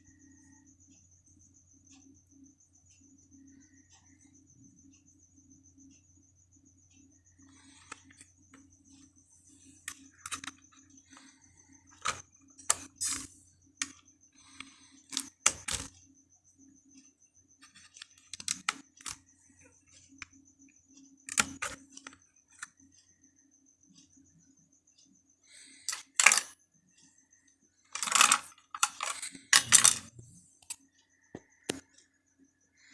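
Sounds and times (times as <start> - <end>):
plastic clicks and rattles: 7.5 - 9.1, 9.8 - 16.0, 17.6 - 19.2, 21.3 - 22.7, 25.8 - 26.6, 27.9 - 32.0.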